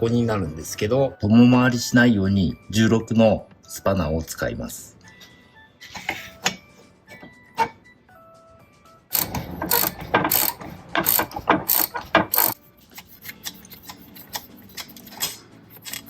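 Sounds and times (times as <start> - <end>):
ratchet wrench clicking: 9.1 - 12.6, 13.2 - 16.0.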